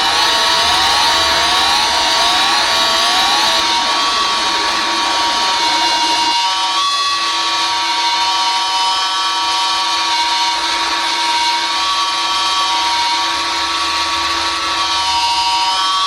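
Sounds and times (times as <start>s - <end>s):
emergency alert alarm tone: 0.0s - 7.6s.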